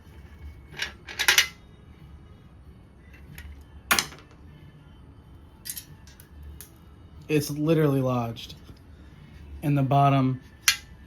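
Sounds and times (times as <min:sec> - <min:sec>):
metal engine parts clinking: 0:00.8 - 0:01.6, 0:05.6 - 0:06.2.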